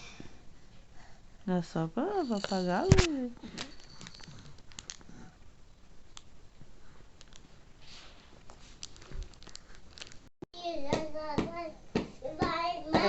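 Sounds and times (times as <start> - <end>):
soft rustling: 6.4 - 10.3.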